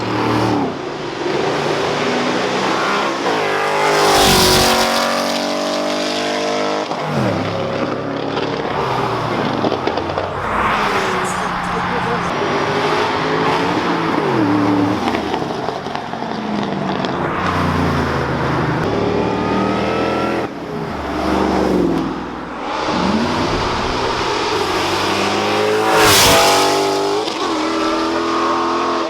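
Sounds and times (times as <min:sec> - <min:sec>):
car engines revving: 0:00.0 - 0:29.0
loud sharp rush: 0:08.9 - 0:13.4.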